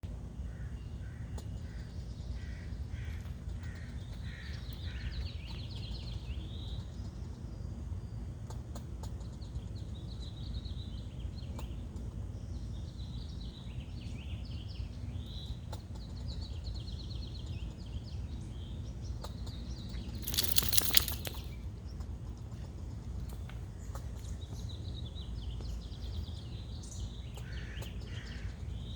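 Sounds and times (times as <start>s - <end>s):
loud rattle: 20.2s - 21.6s.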